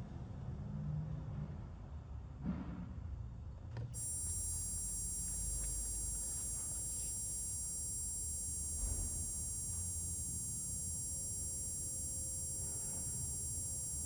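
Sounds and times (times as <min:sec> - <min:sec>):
high-pitched electronic whine: 0:04.0 - 0:14.0
low hum: 0:04.0 - 0:14.0.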